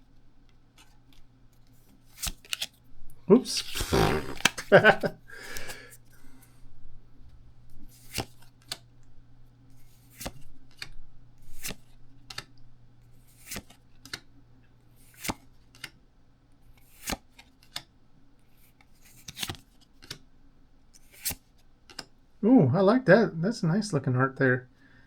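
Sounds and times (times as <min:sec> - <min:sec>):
cards snapping and swishing: 0:02.0 - 0:02.8, 0:03.5 - 0:05.8, 0:07.9 - 0:08.8, 0:09.8 - 0:12.5, 0:13.2 - 0:14.2, 0:15.0 - 0:16.0, 0:16.7 - 0:17.9, 0:18.8 - 0:20.2, 0:21.0 - 0:22.1
faint low hum: 0:02.8 - 0:15.1.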